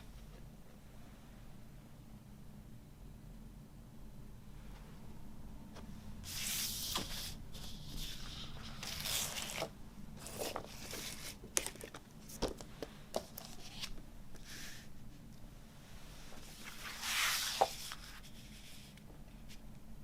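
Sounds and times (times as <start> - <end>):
paper sleeves rustling: 6.2 - 12.0, 16.1 - 19.6.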